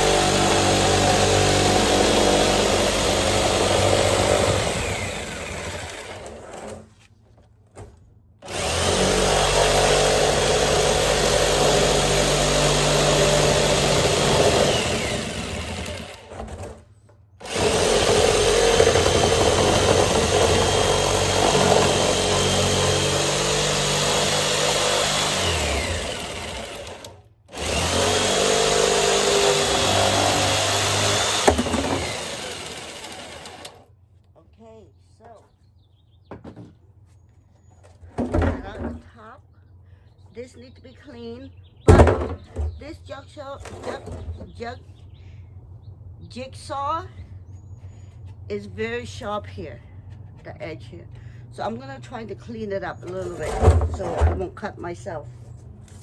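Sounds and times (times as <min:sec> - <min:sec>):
electric jigsaw cutting plastic barrel: 0:00.0 - 0:06.9, 0:08.4 - 0:33.9, 0:41.9 - 0:42.8, 0:53.0 - 0:54.7.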